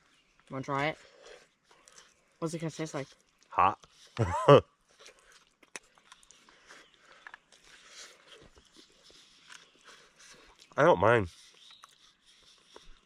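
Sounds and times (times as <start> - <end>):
chewing and mouth sounds: 0.0 - 13.0
person speaking a word: 10.8 - 11.3.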